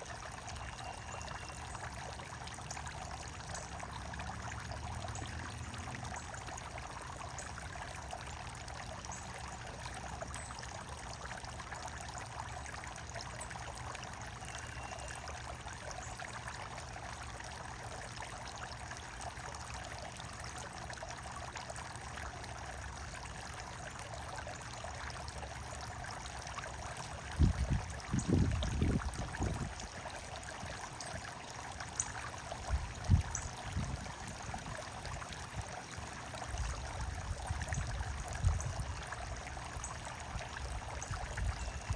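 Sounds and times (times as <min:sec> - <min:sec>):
running water trickling: 0:00.0 - 0:41.9
faint bird chirps: 0:00.5 - 0:01.9, 0:14.4 - 0:15.4, 0:41.6 - 0:41.9.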